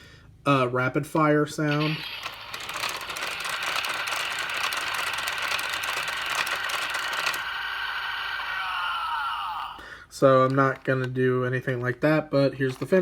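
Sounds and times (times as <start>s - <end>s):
toy belt electronic shots: 1.7s - 8.5s.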